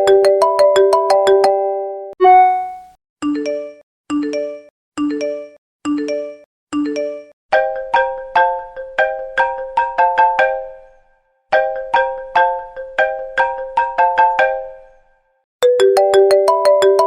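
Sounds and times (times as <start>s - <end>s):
bright mallet-like notes: 2.2s - 2.9s
chiming ringtone: 2.2s - 2.9s
two-note rising chime: 2.2s - 2.9s
bell-like ding: 2.2s - 3.0s.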